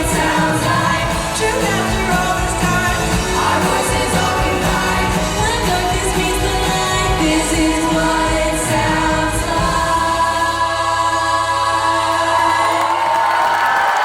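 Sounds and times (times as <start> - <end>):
group singing pop song: 0.0 - 13.4.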